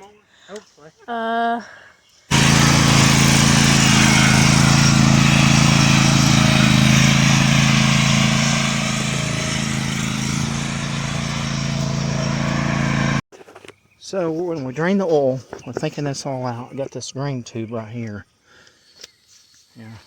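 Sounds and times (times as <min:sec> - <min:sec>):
riding lawn mower engine running: 0:02.3 - 0:13.2.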